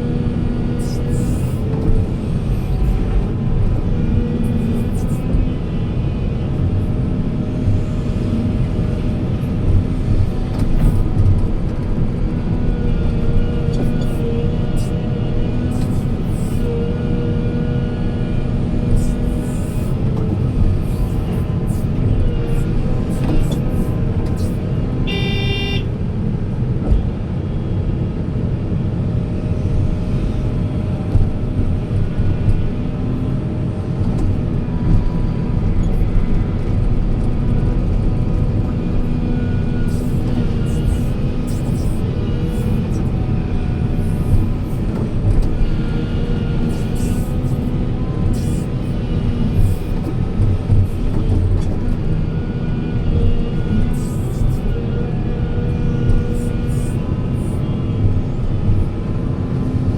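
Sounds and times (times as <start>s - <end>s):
diesel engines rumbling: 0.0s - 59.9s
vehicle horn toot: 25.0s - 25.9s.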